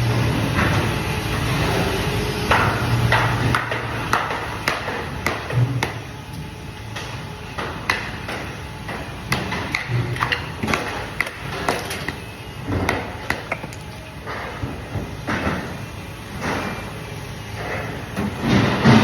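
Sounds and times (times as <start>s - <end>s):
hard objects knocking and clattering: 7.6s - 15.7s.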